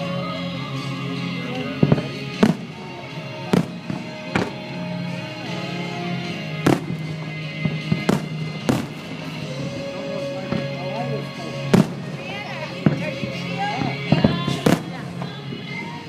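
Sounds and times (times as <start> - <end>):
music playing: 0.0 - 16.0
firework shells booming: 1.8 - 4.7, 6.2 - 9.4, 11.6 - 15.0.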